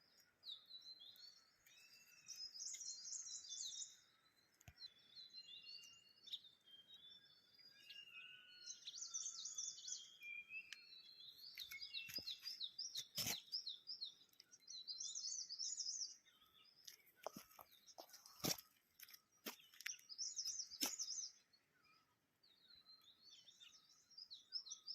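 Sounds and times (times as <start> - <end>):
small birds chirping and trilling: 0.0 - 24.9.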